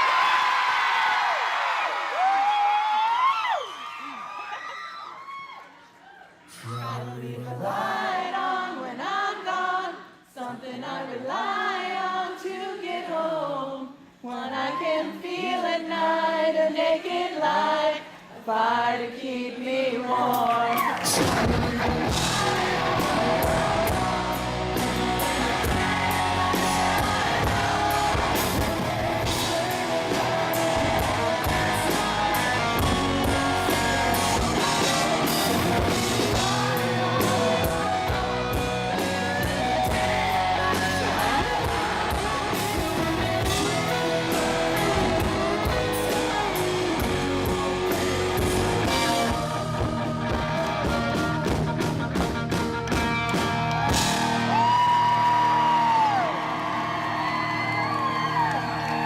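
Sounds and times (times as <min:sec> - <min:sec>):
person singing: 0:14.2 - 0:52.4
electric guitars: 0:20.6 - 0:59.0
rock band playing: 0:21.0 - 0:59.0.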